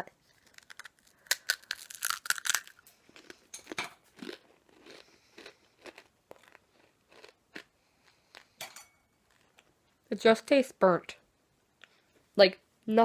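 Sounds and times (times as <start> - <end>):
cookie being chewed with crunches: 0.3 - 8.6, 9.2 - 10.0.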